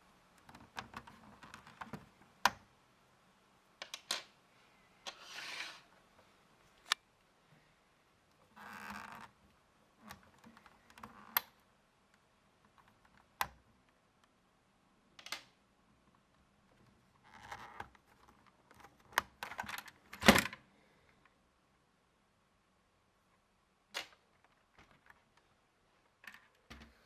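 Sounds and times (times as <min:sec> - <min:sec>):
plastic parts clicking and rattling: 0:00.4 - 0:02.6, 0:17.2 - 0:20.6.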